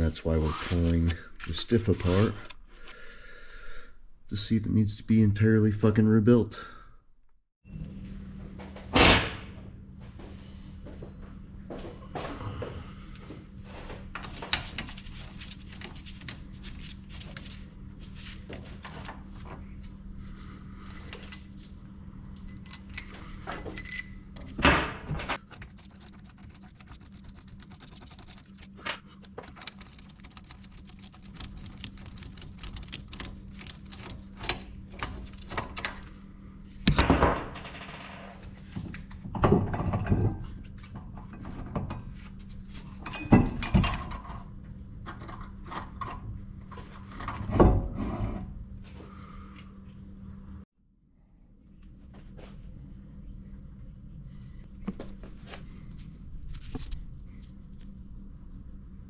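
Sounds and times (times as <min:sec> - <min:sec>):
steady low hum: 0:00.0 - 0:59.0
metal tools clinking and clunking: 0:20.8 - 0:21.7, 0:22.4 - 0:24.7, 0:33.9 - 0:36.2, 0:42.9 - 0:46.3.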